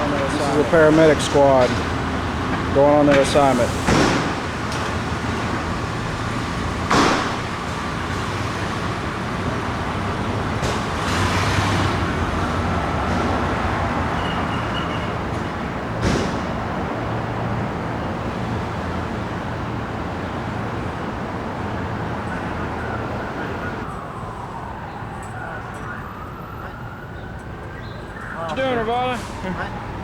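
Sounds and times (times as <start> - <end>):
sharp knocks: 1.5 - 4.9, 6.9 - 7.6.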